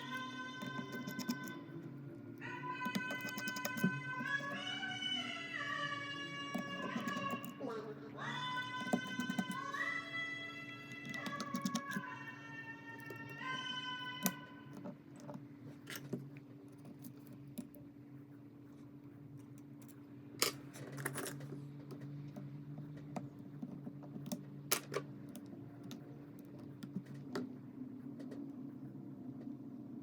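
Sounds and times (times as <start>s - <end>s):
steady low hum: 0.0s - 30.0s
small hand tools clicking and tapping: 11.0s - 12.0s.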